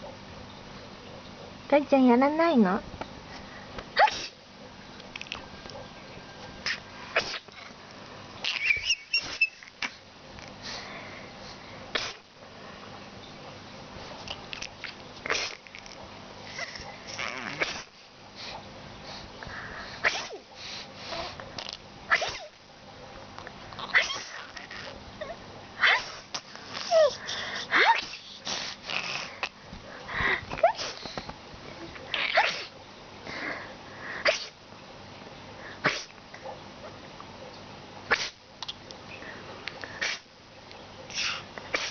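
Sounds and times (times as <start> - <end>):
person sneezing: 4.0 - 4.4, 6.7 - 7.5, 12.0 - 12.2, 20.0 - 20.4, 22.1 - 22.6, 26.8 - 28.8, 32.2 - 32.7, 34.2 - 34.6, 35.8 - 36.1, 38.1 - 38.4, 40.0 - 40.3, 41.1 - 41.9
baby laughing and squealing: 8.4 - 9.8, 23.8 - 26.2, 26.8 - 28.2, 32.1 - 32.7.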